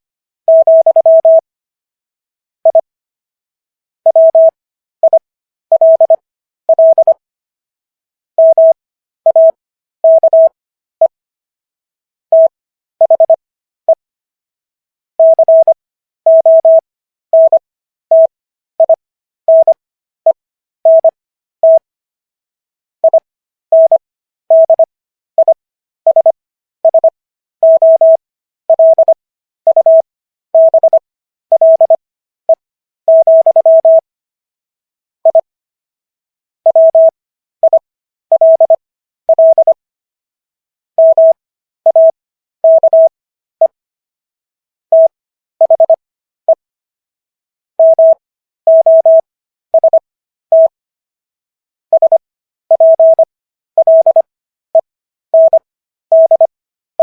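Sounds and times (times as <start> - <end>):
morse code beeps: 0.5 - 1.4, 4.1 - 7.2, 8.4 - 11.2, 12.3 - 14.0, 15.2 - 16.8, 17.4 - 19.8, 20.9 - 21.8, 23.0 - 30.0, 30.6 - 34.0, 35.2 - 35.5, 36.7 - 39.8, 41.0 - 43.8, 44.9 - 46.6, 47.8 - 49.2, 49.8 - 50.8, 51.9 - 56.5.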